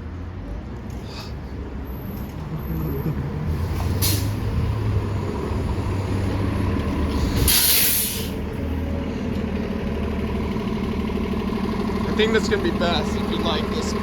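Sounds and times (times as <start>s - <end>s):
bus engine idling: 0.2s - 14.0s
air brake hiss: 4.0s - 4.4s, 7.1s - 8.4s.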